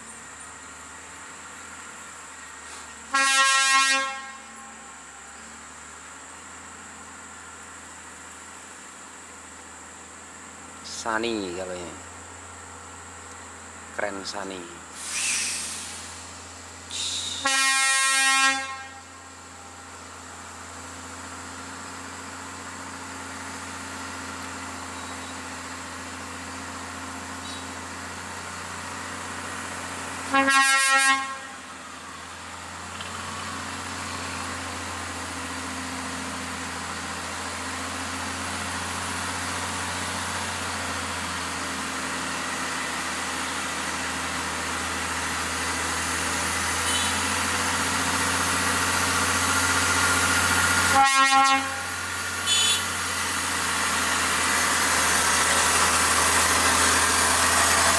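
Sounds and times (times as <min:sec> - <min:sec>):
heavy truck engine labouring: 0:00.0 - 0:57.9
truck air horn: 0:03.0 - 0:05.0, 0:16.9 - 0:19.3, 0:30.2 - 0:31.8, 0:46.8 - 0:47.4, 0:50.8 - 0:53.1.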